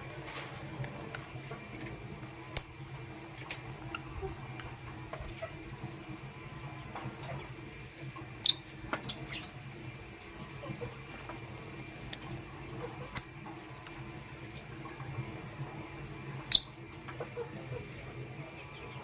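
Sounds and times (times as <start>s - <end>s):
steady low hum: 0.0s - 19.0s
bird squeaky chirps: 8.4s - 9.6s, 16.5s - 16.8s.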